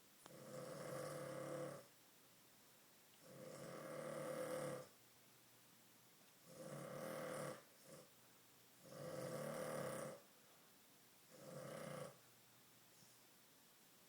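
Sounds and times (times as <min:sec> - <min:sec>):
dog snoring: 0:00.3 - 0:01.9, 0:03.2 - 0:05.0, 0:06.4 - 0:08.1, 0:08.8 - 0:10.2, 0:11.3 - 0:12.2.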